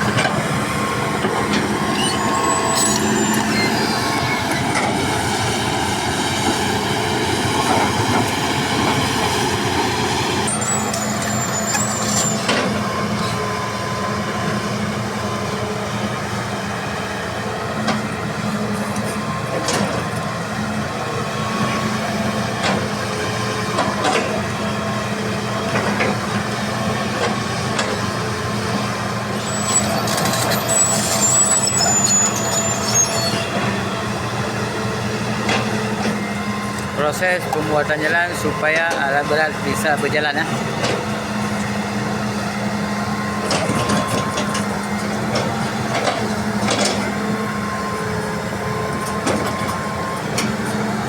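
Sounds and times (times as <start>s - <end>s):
diesel excavator running: 0.0s - 51.0s
high-pitched squeals: 1.6s - 4.8s, 10.5s - 12.5s, 29.4s - 34.0s.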